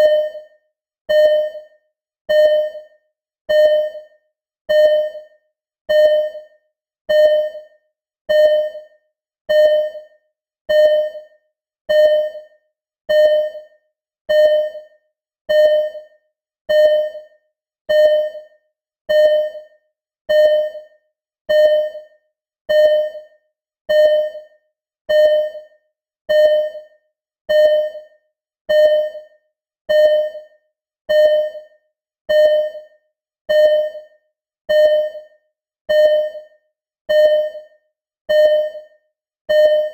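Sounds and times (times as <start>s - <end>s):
heart monitor beeping: 0.0s - 0.5s, 1.1s - 1.7s, 2.3s - 2.9s, 3.5s - 4.1s, 4.7s - 5.3s, 5.9s - 6.5s, 7.1s - 7.7s, 8.3s - 8.9s, 9.5s - 10.1s, 10.7s - 11.3s, 11.9s - 12.5s, 13.1s - 13.7s, 14.3s - 14.9s, 15.5s - 16.1s, 16.7s - 17.3s, 17.9s - 18.5s, 19.1s - 19.7s, 20.3s - 20.9s, 21.5s - 22.1s, 22.7s - 23.3s, 23.9s - 24.5s, 25.1s - 25.7s, 26.3s - 26.9s, 27.5s - 28.1s, 28.7s - 29.3s, 29.9s - 30.5s, 31.1s - 31.7s, 32.3s - 32.9s, 33.5s - 34.1s, 34.7s - 35.3s, 35.9s - 36.5s, 37.1s - 37.7s, 38.3s - 38.9s, 39.5s - 39.9s.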